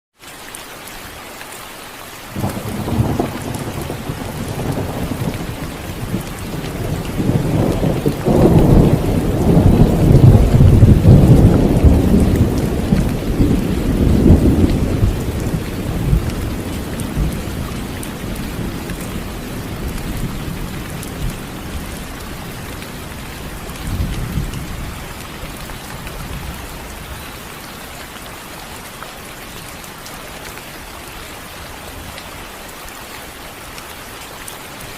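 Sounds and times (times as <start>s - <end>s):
steady rain: 0.2s - 34.9s
rolling thunder rumble: 2.4s - 27.2s.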